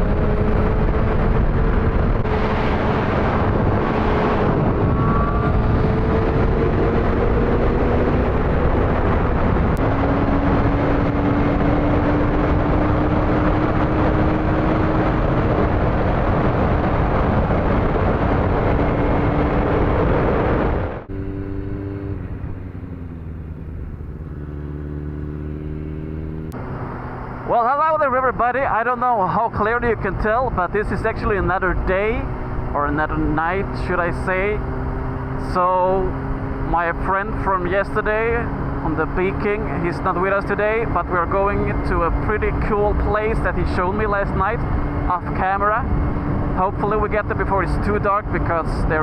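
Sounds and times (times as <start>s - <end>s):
wind rush over microphone: 0.0s - 22.8s, 38.0s - 49.0s
motorcycle engine: 0.0s - 49.0s.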